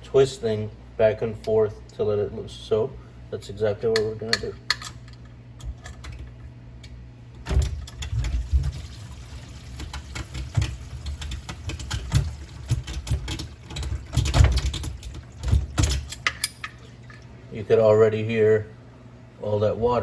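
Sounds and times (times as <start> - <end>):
water gurgling down sink drain: 7.9 - 15.9.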